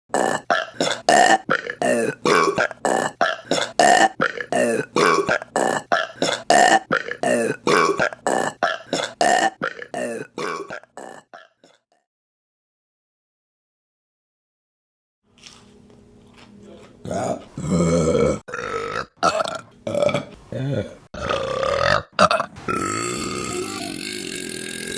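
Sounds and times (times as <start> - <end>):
women burping: 0.1 - 11.4, 17.1 - 20.3, 21.2 - 24.9.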